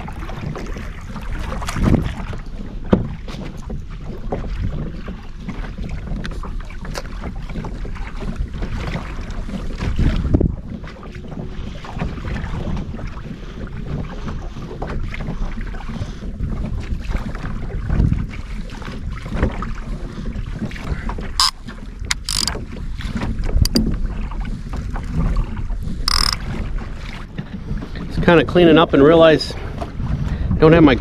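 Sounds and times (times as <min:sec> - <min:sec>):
wind buffeting microphone: 0:00.0 - 0:06.6, 0:07.2 - 0:31.0
short sharp clicks: 0:21.4 - 0:22.5, 0:26.1 - 0:26.4.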